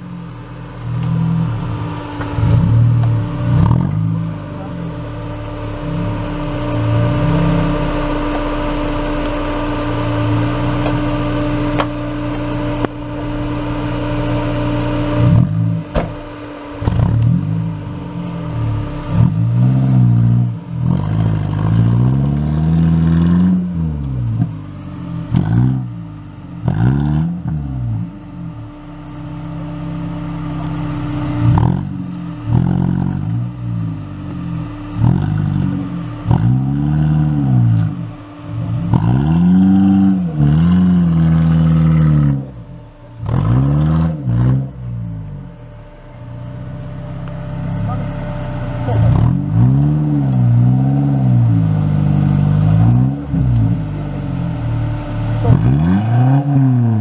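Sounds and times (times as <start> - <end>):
off-road vehicle engine revving: 0.0 - 57.0.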